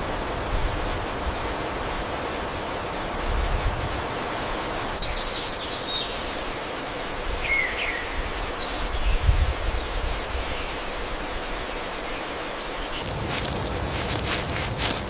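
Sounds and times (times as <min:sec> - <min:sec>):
steady rushing noise: 0:13.0 - 0:15.0.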